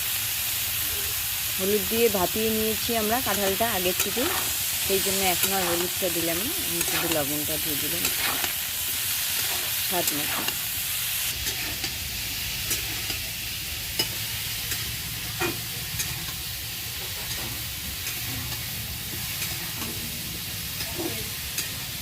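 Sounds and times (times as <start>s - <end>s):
food sizzling in hot oil: 0.0s - 22.0s
spatula scraping a pan: 3.8s - 10.7s, 11.3s - 12.0s, 12.6s - 13.3s, 13.9s - 21.8s.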